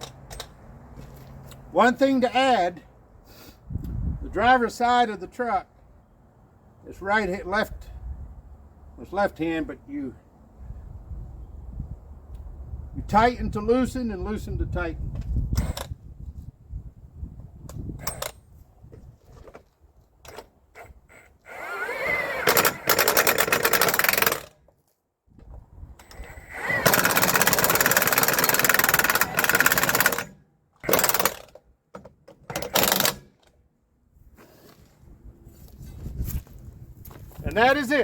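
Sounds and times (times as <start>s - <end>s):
impact wrench hammering: 26.7s - 31.5s.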